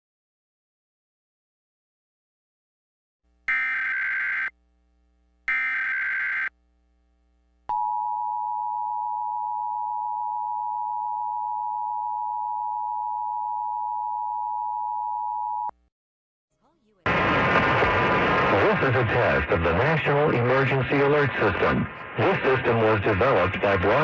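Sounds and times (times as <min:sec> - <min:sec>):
warbling data tones: 0:03.5 - 0:04.5, 0:05.5 - 0:06.5
two-tone alert tone: 0:05.5 - 0:06.5.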